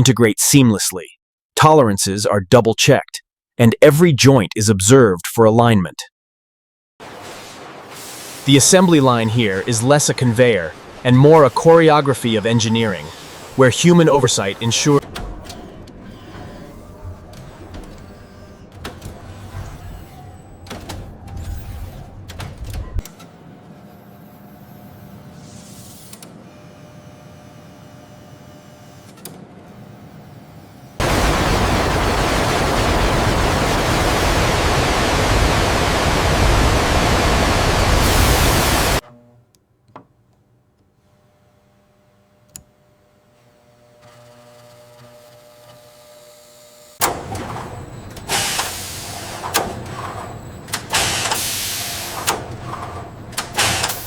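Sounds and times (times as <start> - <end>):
machine hum: 8.3 - 39.0, 47.0 - 54.0
mechanical clattering and knocking: 15.0 - 23.3, 47.0 - 54.0.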